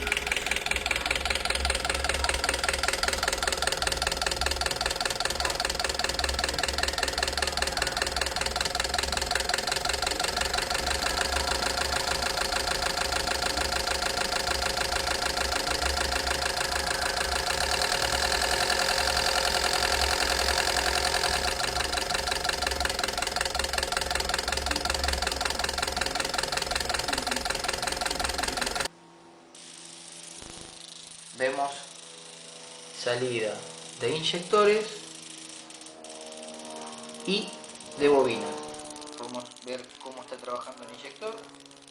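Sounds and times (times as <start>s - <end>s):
car engine idling: 0.0s - 28.9s.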